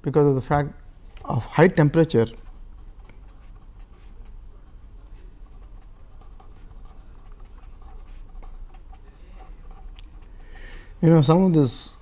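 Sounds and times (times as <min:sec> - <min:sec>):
steady low hum: 0:00.0 - 0:12.0
pen scratching on paper: 0:02.0 - 0:10.6.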